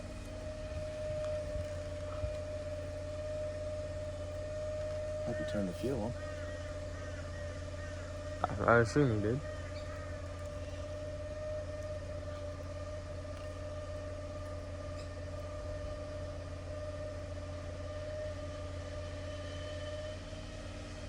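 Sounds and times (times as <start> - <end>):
engine and pump humming: 0.0 - 21.0
steady whine: 0.0 - 21.0.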